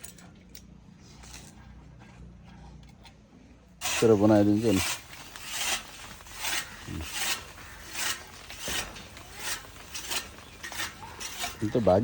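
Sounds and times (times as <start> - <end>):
hand scraping rasping strokes: 3.8 - 12.0.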